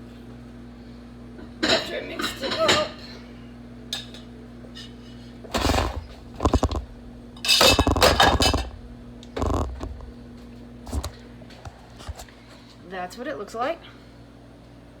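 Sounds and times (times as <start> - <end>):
pots and utensils clattering: 4.8 - 10.1.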